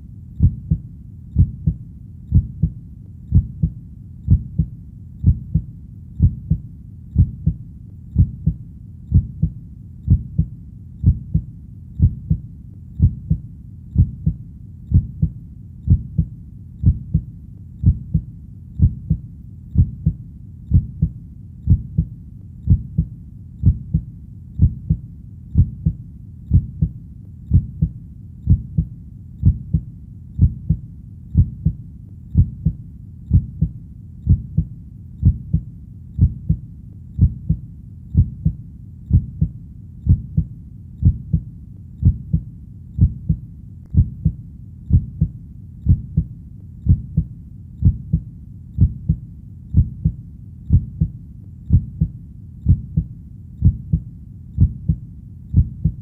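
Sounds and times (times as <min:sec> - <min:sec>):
heartbeat double thump: 0:00.4 - 0:00.8, 0:01.4 - 0:06.6, 0:07.2 - 0:07.6, 0:08.2 - 0:12.4, 0:13.0 - 0:13.4, 0:14.0 - 0:19.2, 0:19.8 - 0:22.1, 0:22.7 - 0:25.0, 0:25.6 - 0:29.8, 0:30.4 - 0:30.8, 0:31.4 - 0:31.8, 0:32.4 - 0:33.7, 0:34.3 - 0:35.6, 0:36.2 - 0:36.6, 0:37.2 - 0:37.6, 0:38.2 - 0:39.5, 0:40.1 - 0:41.4, 0:42.0 - 0:42.4, 0:43.0 - 0:45.3, 0:45.9 - 0:48.2, 0:48.8 - 0:49.2, 0:49.8 - 0:51.1, 0:51.7 - 0:52.1, 0:52.7 - 0:54.0, 0:54.6 - 0:56.0.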